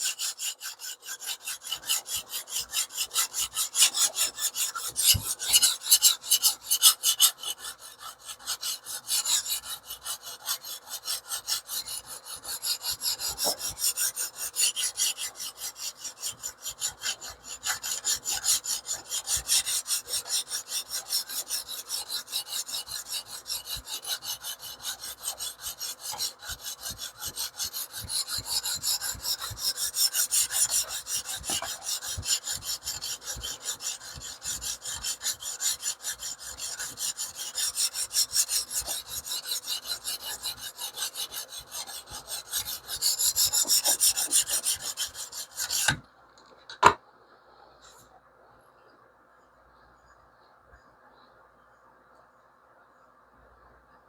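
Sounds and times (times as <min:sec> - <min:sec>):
sharpening stone scraping knife edge: 0:00.0 - 0:07.7.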